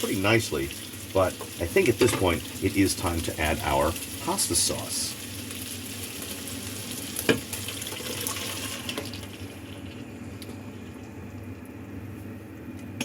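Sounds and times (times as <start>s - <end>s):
meatballs sizzling in a frying pan: 0.0s - 9.8s.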